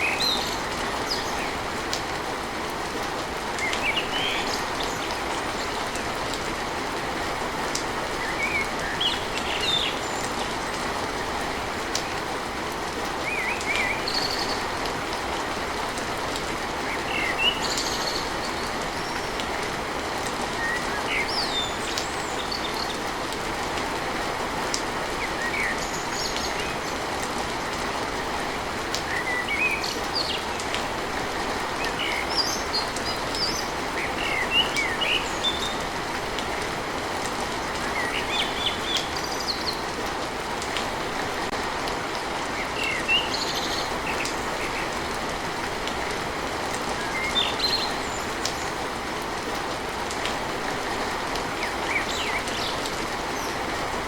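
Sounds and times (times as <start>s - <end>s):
rain on a tin roof: 0.0s - 54.0s
birds chirping: 20.4s - 23.1s, 28.0s - 40.0s, 42.0s - 49.0s, 51.0s - 54.0s.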